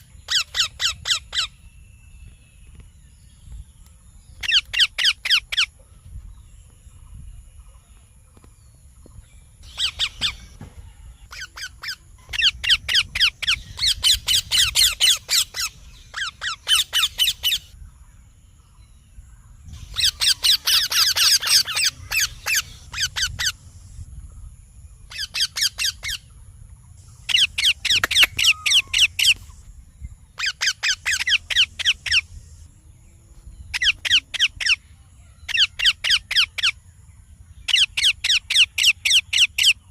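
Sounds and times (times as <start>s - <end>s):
parakeet squawking chirps: 11.3s - 17.7s, 19.8s - 23.6s, 27.3s - 29.4s, 30.4s - 32.3s.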